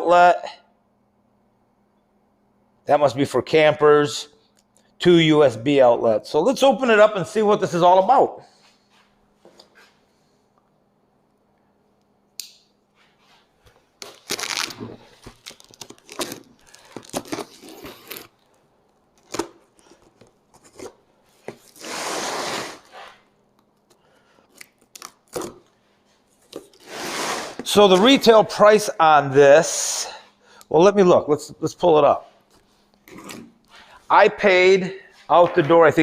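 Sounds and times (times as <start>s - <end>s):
tape tearing: 14.0s - 23.2s, 23.8s - 25.7s, 26.5s - 27.8s
cardboard rasping: 19.8s - 23.2s, 26.8s - 27.7s.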